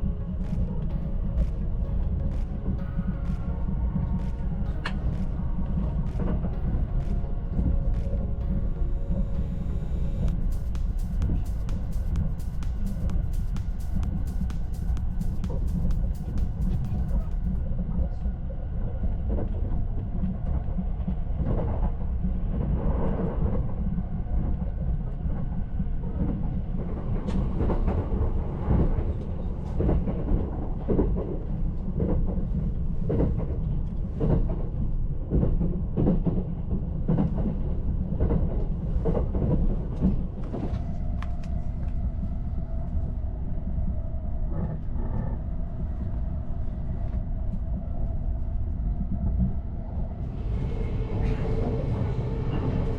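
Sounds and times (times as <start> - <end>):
steady hum: 0.0 - 17.7
train low rumble: 0.0 - 52.9.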